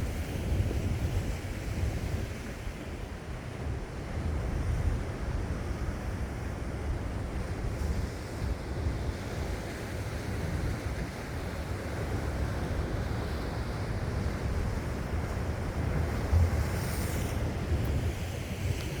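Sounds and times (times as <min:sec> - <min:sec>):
surf washing on shore: 0:10.4 - 0:19.0.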